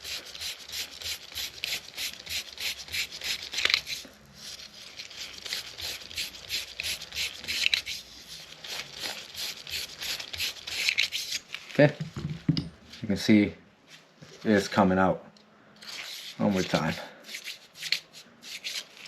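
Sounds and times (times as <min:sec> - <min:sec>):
bore brush scrubbing a barrel: 0:00.0 - 0:11.4, 0:15.9 - 0:19.0.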